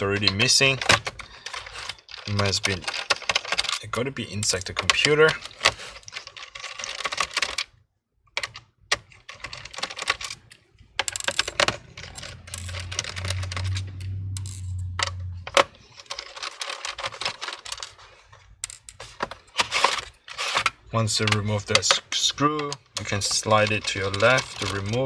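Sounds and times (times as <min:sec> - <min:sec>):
plastic case being handled: 0:00.0 - 0:07.7, 0:08.4 - 0:25.0
steady low hum: 0:10.8 - 0:16.2
screwdriver clicking on screws: 0:22.6 - 0:25.0.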